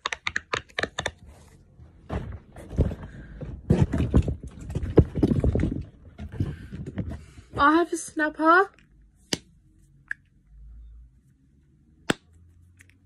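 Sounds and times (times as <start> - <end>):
rustling with dull thumps: 1.2 - 7.8.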